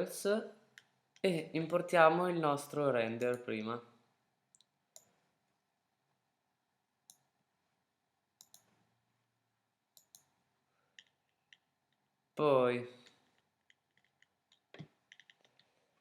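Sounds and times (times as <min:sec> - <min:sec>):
computer mouse clicks: 0:04.5 - 0:05.2, 0:08.4 - 0:08.8, 0:10.0 - 0:10.3, 0:13.4 - 0:15.7.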